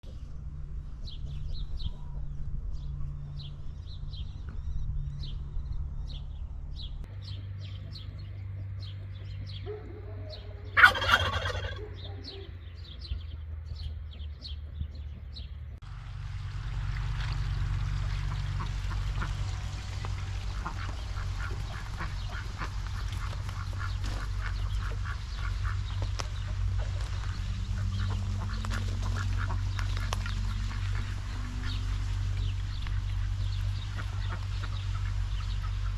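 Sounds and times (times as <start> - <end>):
overlapping small bird calls: 7.1 - 15.8, 20.6 - 35.9
turkey gobble: 8.9 - 13.0.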